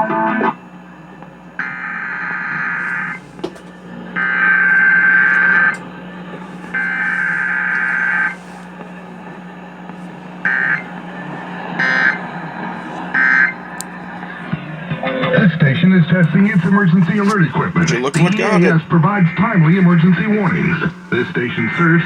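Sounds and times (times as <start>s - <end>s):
buzzing data bursts on radio: 1.6s - 14.6s.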